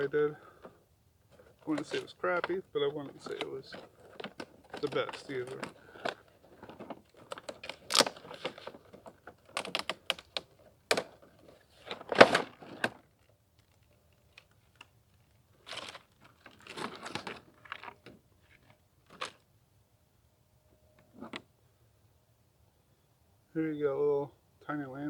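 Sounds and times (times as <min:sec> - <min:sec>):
packaging rustling: 0:00.4 - 0:19.4
packaging clicks and taps: 0:01.4 - 0:11.2.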